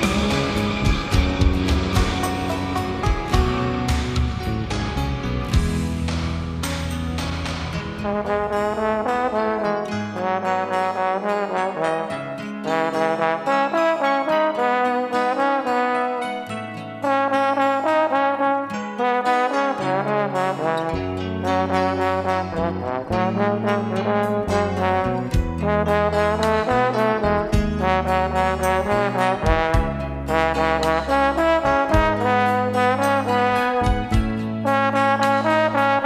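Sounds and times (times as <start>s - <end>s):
pop music: 0.0s - 5.8s.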